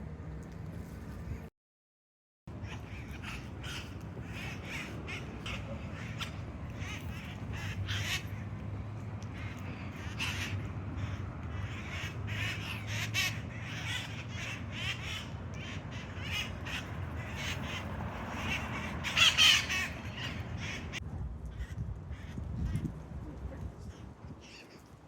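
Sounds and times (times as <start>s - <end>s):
parakeets calling: 2.5s - 21.0s.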